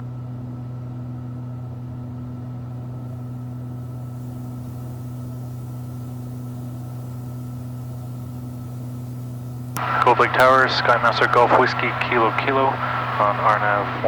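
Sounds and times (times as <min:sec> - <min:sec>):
airplane cabin engine drone: 0:00.0 - 0:14.0.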